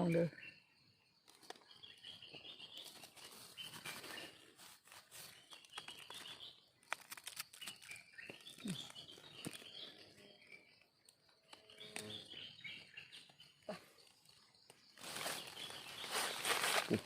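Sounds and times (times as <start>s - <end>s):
forest birds chirping: 0.0s - 17.0s
dry leaves crackling and rustling: 2.8s - 9.6s, 15.0s - 17.0s.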